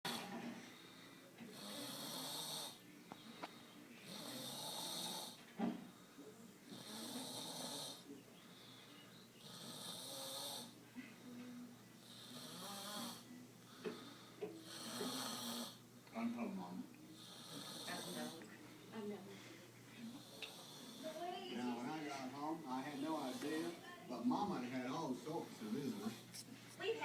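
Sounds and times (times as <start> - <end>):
man snoring loudly: 1.5 - 2.8, 4.1 - 5.4, 6.7 - 8.0, 9.4 - 10.7, 12.1 - 13.2, 14.6 - 15.8.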